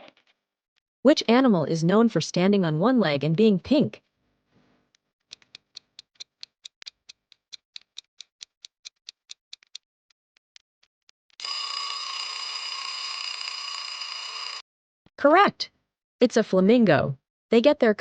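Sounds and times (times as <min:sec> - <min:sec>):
clock ticking: 0:05.3 - 0:09.8
loud steady alarm tone: 0:11.4 - 0:14.6.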